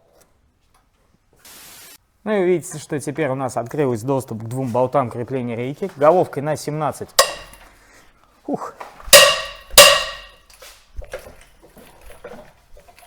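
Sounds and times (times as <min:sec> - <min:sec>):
ringing metal clanks: 0:07.2 - 0:07.6, 0:09.1 - 0:10.4.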